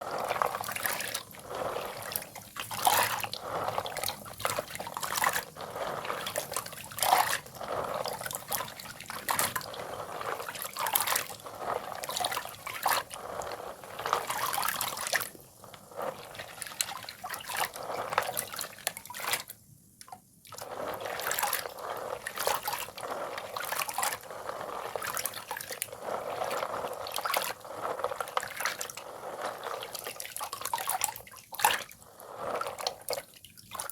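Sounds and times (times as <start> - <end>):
wet chalk crumbling: 20.7 - 33.2.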